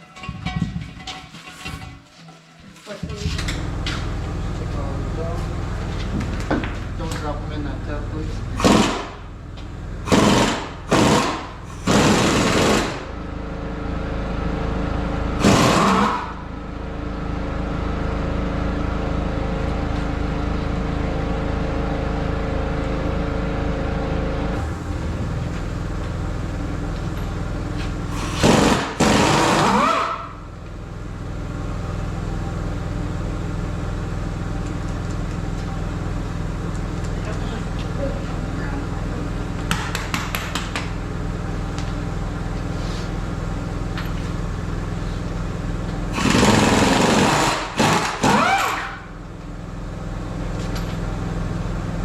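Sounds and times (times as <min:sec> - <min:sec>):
steady machine hum: 0:03.2 - 0:52.0
pneumatic impact wrench rattling: 0:08.6 - 0:09.3, 0:10.0 - 0:13.2, 0:15.4 - 0:16.4, 0:28.0 - 0:30.3, 0:46.1 - 0:49.1.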